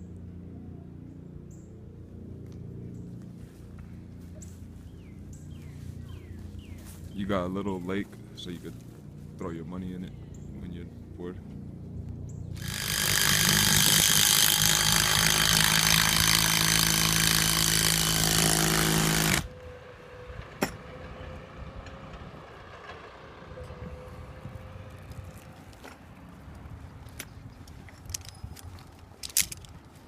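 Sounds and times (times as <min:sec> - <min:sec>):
power tool running: 0:12.5 - 0:19.6.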